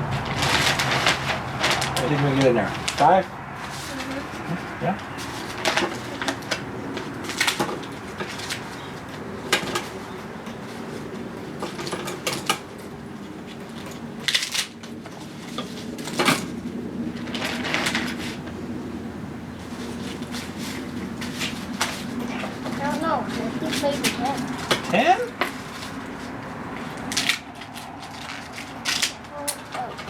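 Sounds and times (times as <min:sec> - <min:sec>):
plastic bag crinkling: 0:00.0 - 0:03.1.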